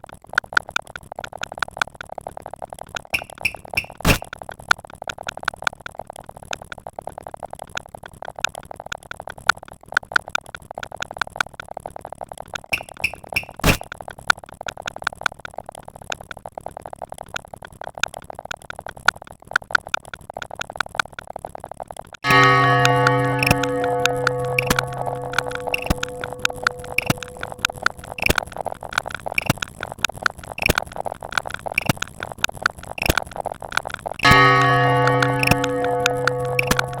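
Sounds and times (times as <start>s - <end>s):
short electronic clicks: 3.1s - 4.3s, 12.7s - 13.9s, 30.6s - 30.8s
sustained synthesizer chord: 22.2s - 28.6s, 34.2s - 37.0s
low steady buzz: 22.3s - 28.8s, 34.2s - 37.0s.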